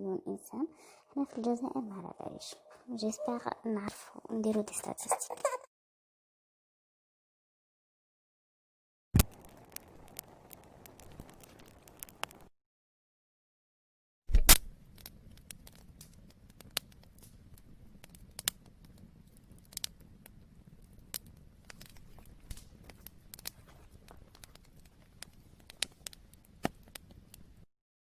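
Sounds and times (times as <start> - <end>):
sharp clicks and crackles: 9.2 - 12.5, 14.3 - 27.7.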